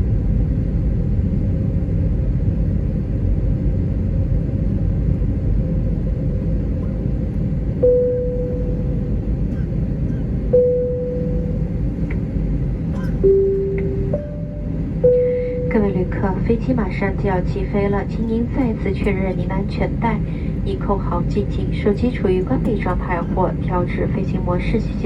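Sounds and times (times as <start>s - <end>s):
aircraft cabin engine rumble: 0.0s - 25.0s
short cabin tones: 7.8s - 24.9s.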